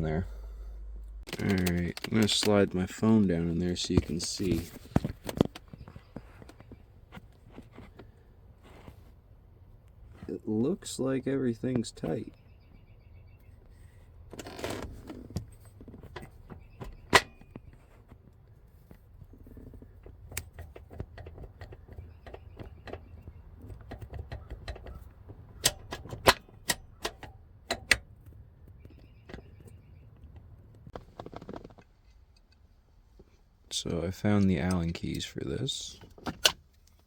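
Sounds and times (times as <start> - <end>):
hand tools clicking and clinking: 1.3 - 2.6.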